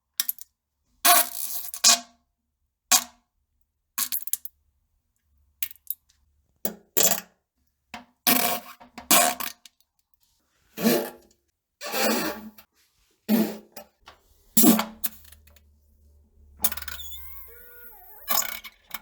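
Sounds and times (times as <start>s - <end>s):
buzzy fart sounds: 16.8s - 18.8s.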